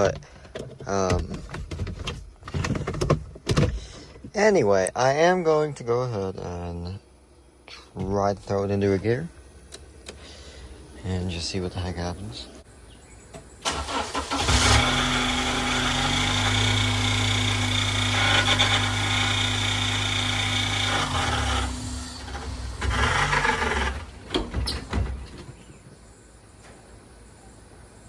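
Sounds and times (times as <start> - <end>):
starter cranking engine: 13.6 - 24.6
car engine running: 13.8 - 25.7.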